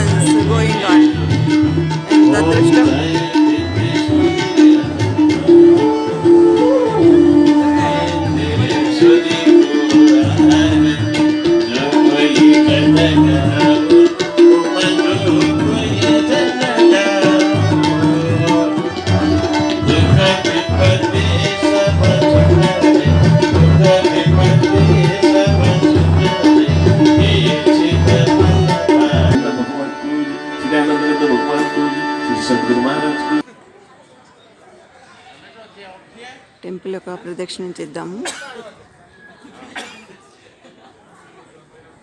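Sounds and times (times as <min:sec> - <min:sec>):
tabla beating: 0:00.0 - 0:30.0
sustained melody line: 0:00.0 - 0:33.4.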